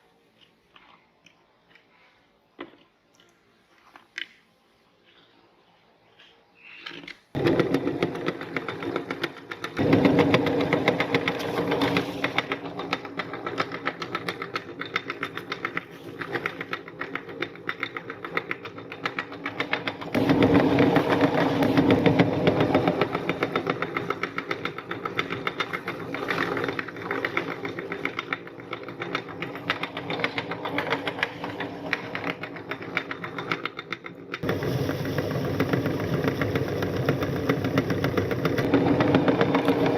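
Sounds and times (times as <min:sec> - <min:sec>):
electric meat grinder running: 0:07.4 - 0:14.3, 0:19.2 - 0:28.2, 0:34.4 - 0:39.9.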